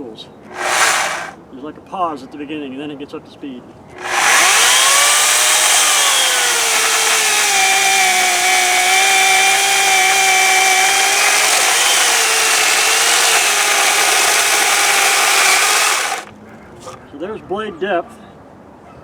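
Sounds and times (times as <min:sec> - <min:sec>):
electric chainsaw cutting a log: 0:00.5 - 0:01.4, 0:04.0 - 0:16.3.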